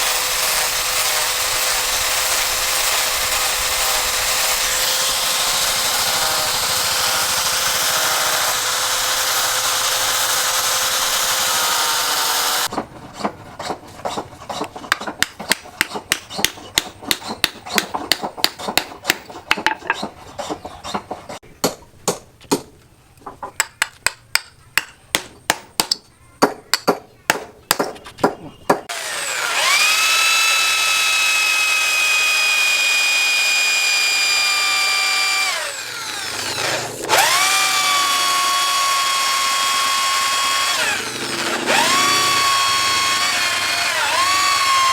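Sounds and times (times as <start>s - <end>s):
power tool rasping: 0.0s - 15.2s, 28.9s - 44.9s
sharp irregular knocks: 12.7s - 28.9s
electric drill motor whine: 28.9s - 44.9s.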